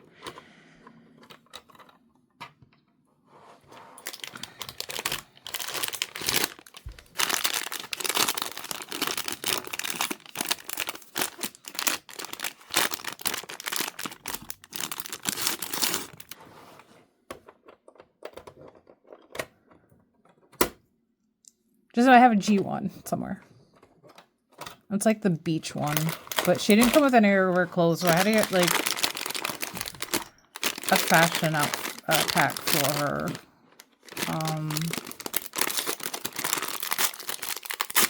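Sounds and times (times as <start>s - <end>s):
packaging crinkling and tearing: 4.0s - 16.4s, 25.7s - 38.0s.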